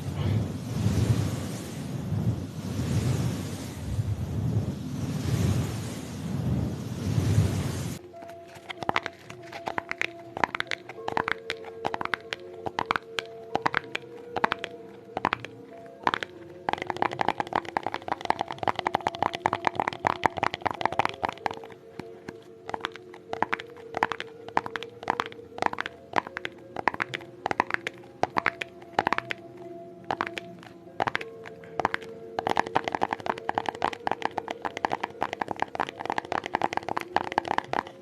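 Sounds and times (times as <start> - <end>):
tapping on hard objects: 8.7 - 21.7, 30.1 - 38.0.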